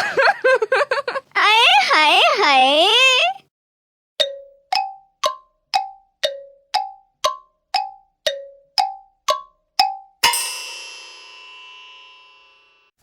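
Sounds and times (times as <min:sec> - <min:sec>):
pitched metallic dings: 0:04.2 - 0:12.8.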